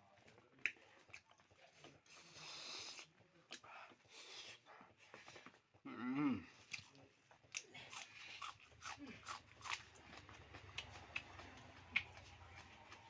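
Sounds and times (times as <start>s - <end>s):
person chewing food: 0.2s - 13.0s.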